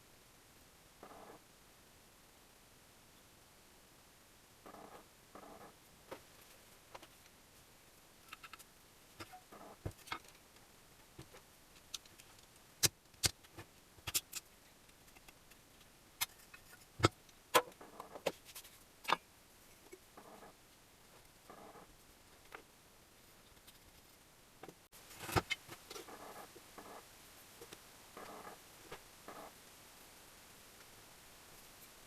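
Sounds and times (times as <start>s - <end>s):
soft rustles: 17.8s - 18.9s.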